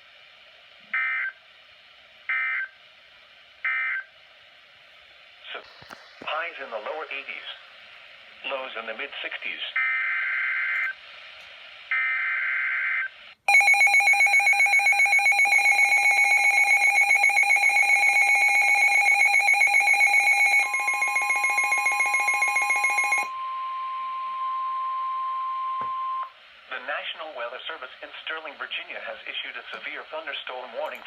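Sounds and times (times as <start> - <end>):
rapidly pulsing alert alarm: 13.5 - 23.3
steady single-pitch warning tone: 13.5 - 26.4.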